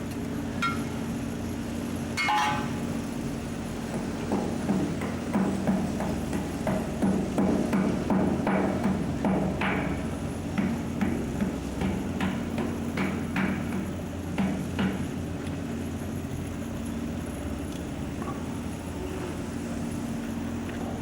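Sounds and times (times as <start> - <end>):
hammer blows on metal rail: 2.2 - 3.0.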